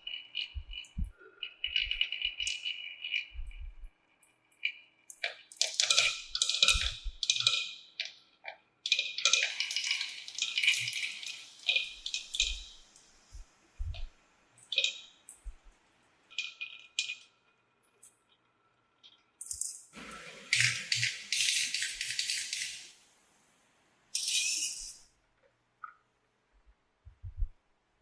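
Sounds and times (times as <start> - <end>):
marbles rolling on plastic track: 8.9 - 12.6, 20.5 - 22.9, 24.2 - 24.9.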